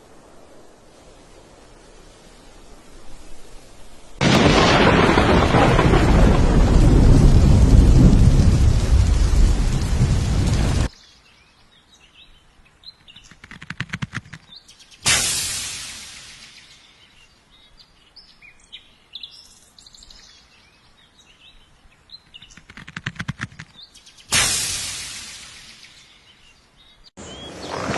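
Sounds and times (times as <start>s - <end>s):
quick run of ticks: 13.1s - 14.7s, 22.2s - 24.0s.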